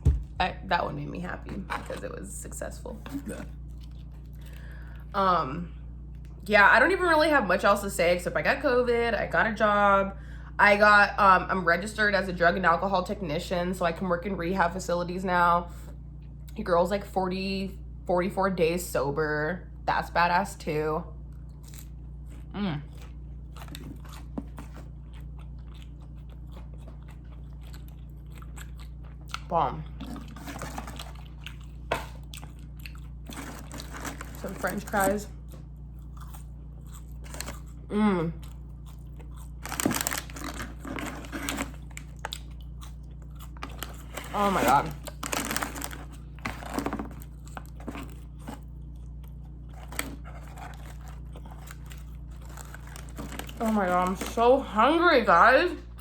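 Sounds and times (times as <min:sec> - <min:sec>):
person chewing food: 0:03.0 - 0:05.1, 0:21.3 - 0:34.4, 0:35.3 - 0:44.4, 0:45.0 - 0:53.8.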